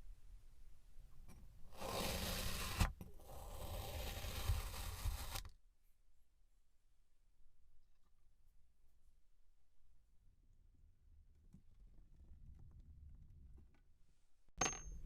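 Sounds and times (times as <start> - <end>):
knife scraping through sand: 3.4 - 5.5.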